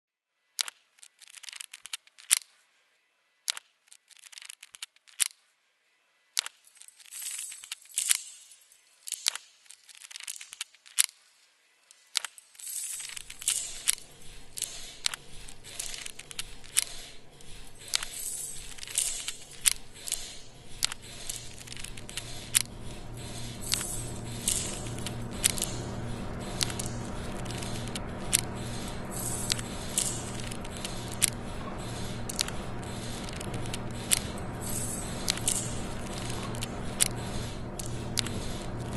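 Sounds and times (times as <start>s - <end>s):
low steady hum: 12.6s - 38.9s
sharp clicks taps and crackles: 13.3s - 38.9s.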